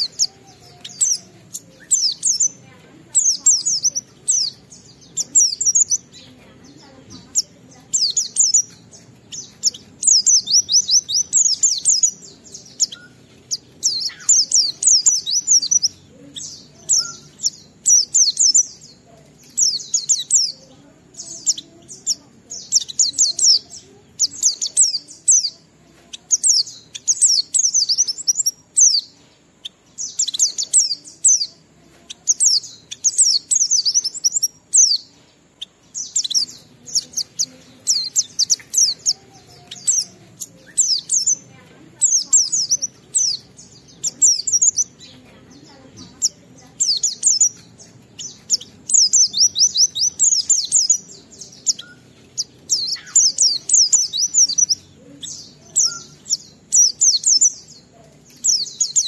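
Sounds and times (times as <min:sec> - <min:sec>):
bird singing rapid chirps: 0:00.0 - 0:59.0.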